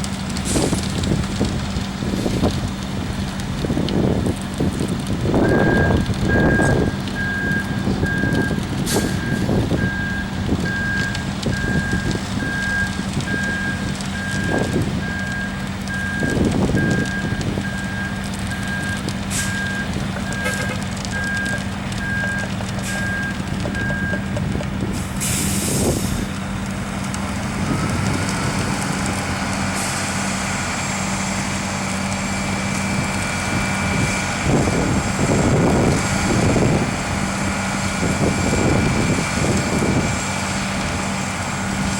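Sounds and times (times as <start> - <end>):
diesel truck engine running: 0.0 - 41.9
reversing alarm beeping: 5.4 - 24.4
air brakes hissing: 8.9 - 9.2, 19.3 - 19.7, 24.9 - 26.3.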